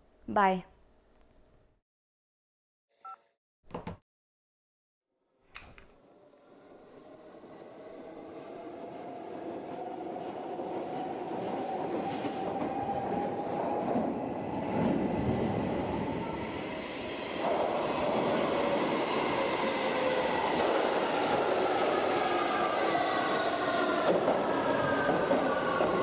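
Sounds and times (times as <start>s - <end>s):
subway train rumble: 6.0s - 26.0s.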